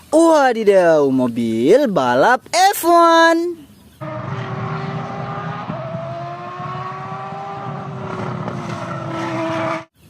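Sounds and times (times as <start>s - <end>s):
race car engine whining: 4.0s - 10.0s.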